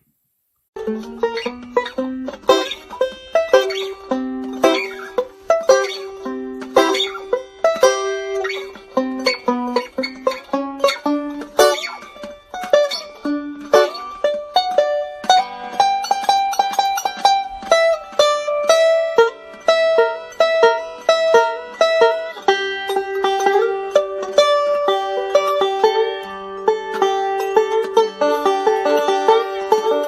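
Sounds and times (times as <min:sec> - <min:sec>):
plucked string instrument melody: 0:00.8 - 0:30.0.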